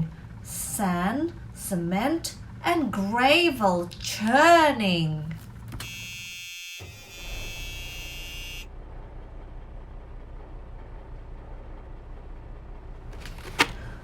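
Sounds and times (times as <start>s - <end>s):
low engine rumble: 0.0s - 6.0s, 6.8s - 14.0s
high buzzing tone: 5.8s - 8.7s.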